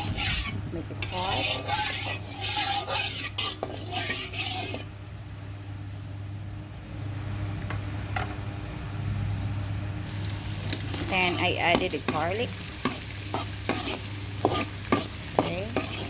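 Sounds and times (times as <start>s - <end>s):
hot oil hissing: 0.0s - 4.9s, 10.0s - 16.0s.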